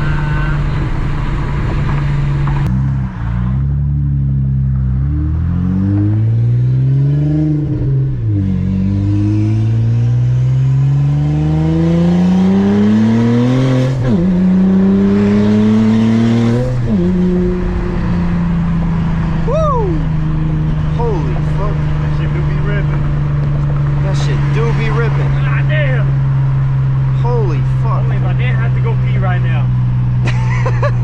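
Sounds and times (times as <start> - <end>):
car engine accelerating hard: 0.0 - 31.0.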